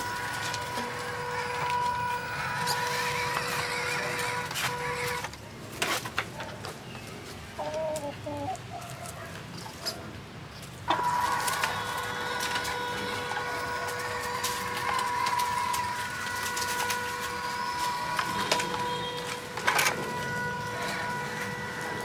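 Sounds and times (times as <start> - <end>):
toy car motor whining: 0.0 - 5.3, 10.9 - 22.0.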